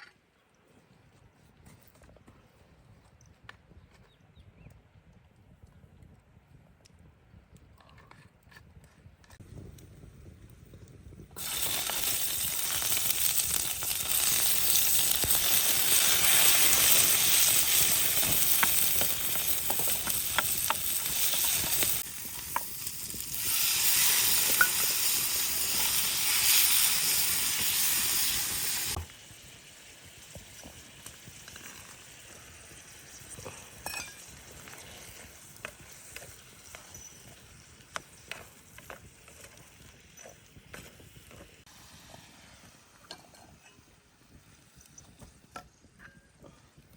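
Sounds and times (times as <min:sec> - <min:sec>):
food sizzling in hot pan: 0:11.4 - 0:43.2.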